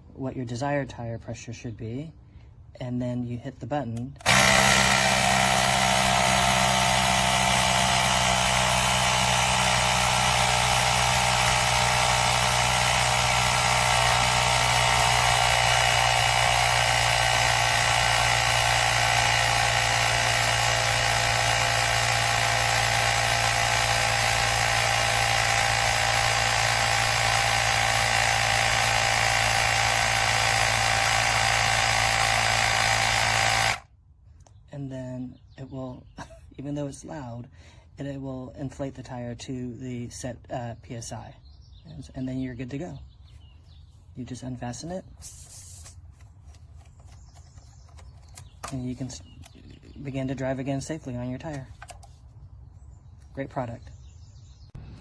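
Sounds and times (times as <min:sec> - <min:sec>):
tire inflator compressor running: 0:04.2 - 0:33.9, 0:45.2 - 0:49.6.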